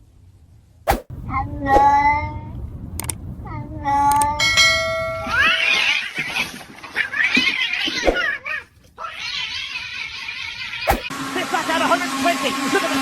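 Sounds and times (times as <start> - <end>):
cat yowling and meowing: 1.3 - 2.4, 3.4 - 4.5, 5.2 - 11.1.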